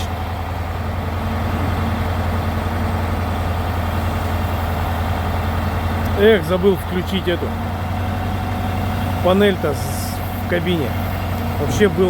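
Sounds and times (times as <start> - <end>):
diesel truck engine idling: 0.0 - 12.0.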